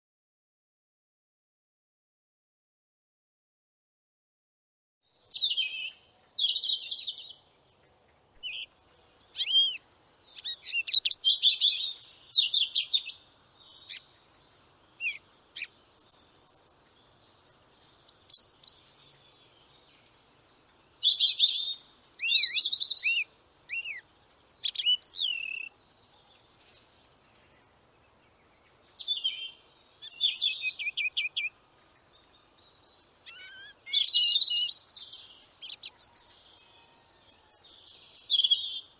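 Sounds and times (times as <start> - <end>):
eagle chittering and whistling: 9.4 - 9.8, 33.3 - 34.9.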